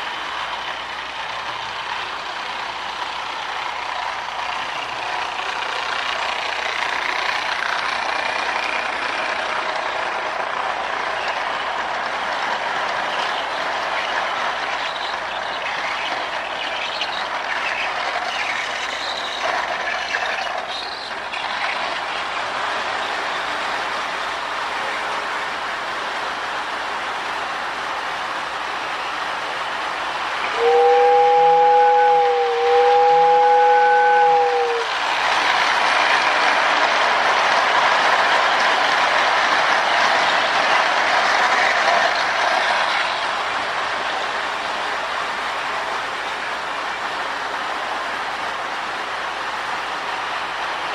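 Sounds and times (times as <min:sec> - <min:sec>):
toy train wheels and motor rattling: 0:00.0 - 0:22.4
train wheels rattling on rails: 0:00.0 - 0:50.9
two-note train whistle: 0:30.5 - 0:35.0.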